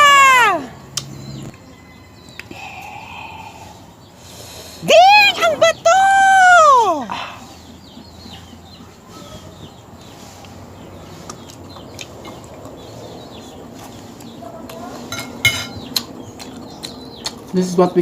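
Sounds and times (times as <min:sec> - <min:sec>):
faint birds chirping: 0:00.0 - 0:18.0.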